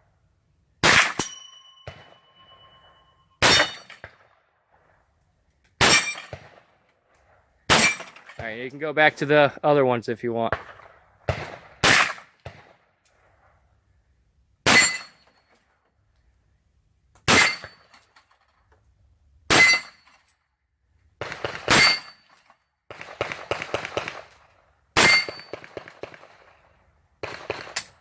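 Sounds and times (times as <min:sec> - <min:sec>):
rifle shots: 0:00.8 - 0:02.2, 0:03.4 - 0:04.3, 0:05.8 - 0:06.8, 0:07.7 - 0:08.4, 0:10.5 - 0:12.8, 0:17.3 - 0:17.8, 0:21.2 - 0:22.2, 0:22.9 - 0:26.6, 0:27.2 - 0:28.0
steel target ringing: 0:01.0 - 0:04.0.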